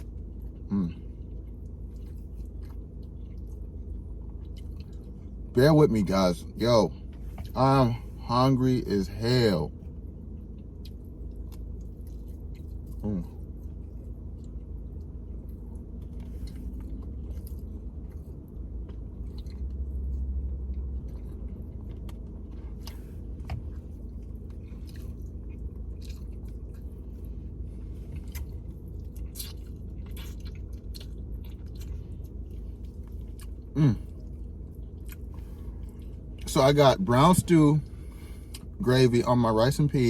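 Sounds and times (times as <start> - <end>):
man chewing food: 0.0 - 5.5, 9.7 - 36.6, 37.2 - 38.8
steady low hum: 0.0 - 40.0.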